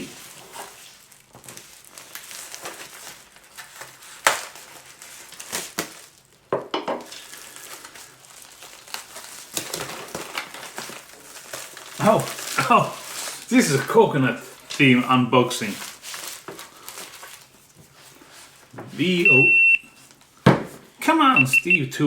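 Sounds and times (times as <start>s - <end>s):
wrapping paper crinkling: 0.0s - 21.3s
paper snapping: 3.8s - 4.6s.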